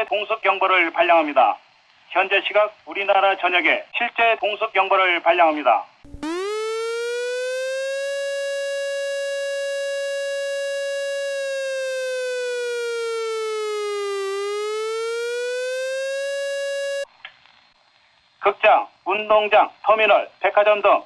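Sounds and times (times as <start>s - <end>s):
air-raid siren wailing: 6.1s - 17.1s.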